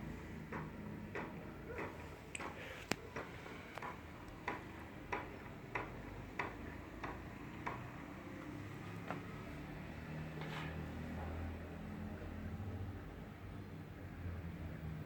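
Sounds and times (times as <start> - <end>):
sharp clicks: 0.5 - 7.8.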